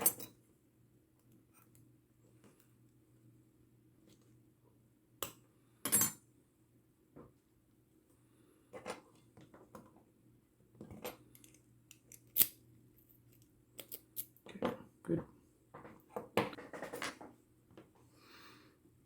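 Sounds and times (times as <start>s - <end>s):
metal parts clicking and clinking: 11.3s - 12.5s.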